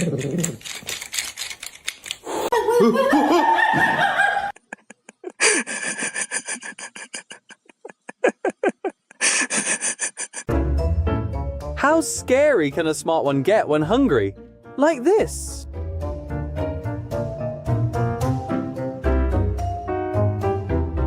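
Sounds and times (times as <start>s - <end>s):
person laughing: 2.3s - 10.5s.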